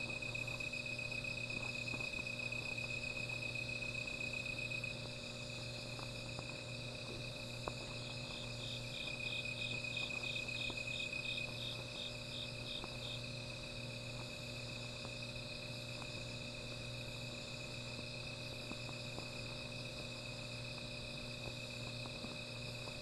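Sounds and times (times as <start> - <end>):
cricket trilling: 0.0 - 23.0
insect chirping in pulses: 7.9 - 13.6.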